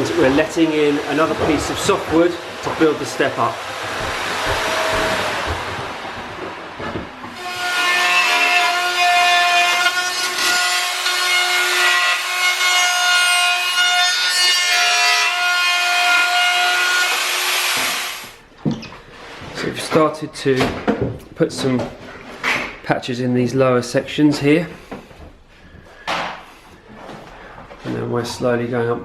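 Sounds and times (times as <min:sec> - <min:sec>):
electric router cutting wood: 0:07.3 - 0:18.4.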